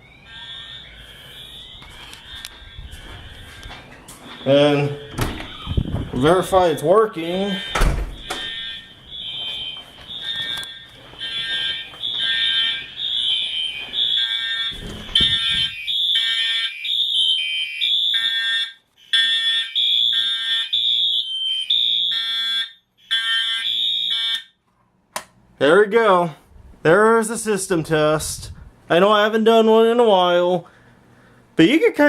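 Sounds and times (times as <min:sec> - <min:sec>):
fire alarm horn blasts: 0:00.0 - 0:24.6.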